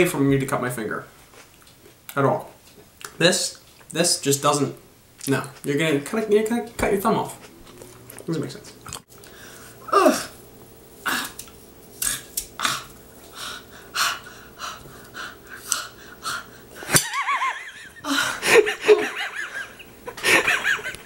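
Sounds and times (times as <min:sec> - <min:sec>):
breathless wheezing laughter: 0:16.2 - 0:21.0.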